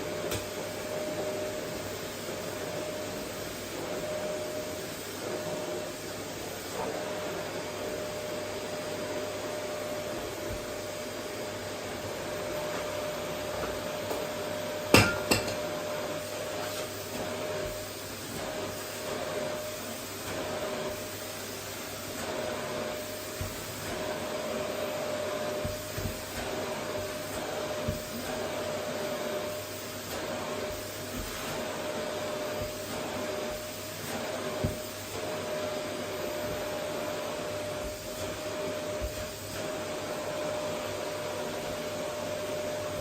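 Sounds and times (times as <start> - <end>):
vacuum cleaner running: 0.0 - 43.0.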